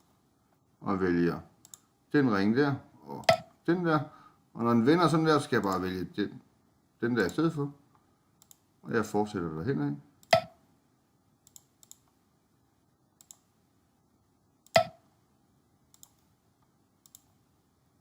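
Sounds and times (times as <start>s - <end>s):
computer mouse clicking: 1.6s - 1.9s, 8.4s - 8.6s, 11.4s - 12.2s, 13.2s - 13.5s, 15.9s - 16.3s, 17.0s - 17.4s.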